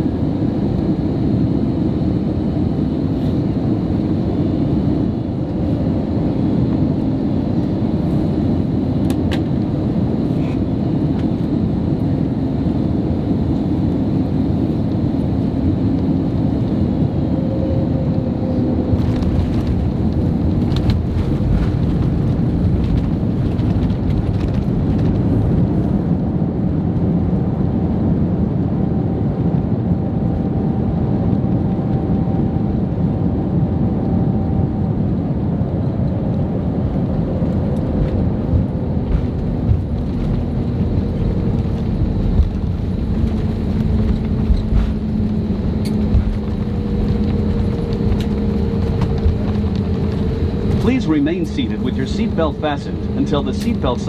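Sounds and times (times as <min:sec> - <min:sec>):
aircraft engine rumble in cabin: 0:00.0 - 0:54.0
faint hum: 0:37.2 - 0:54.0.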